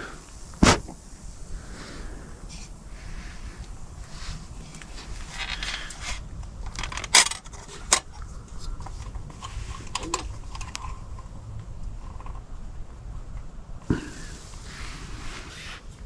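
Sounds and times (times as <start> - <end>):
camp gear rustling: 2.5 - 12.5, 13.8 - 16.0.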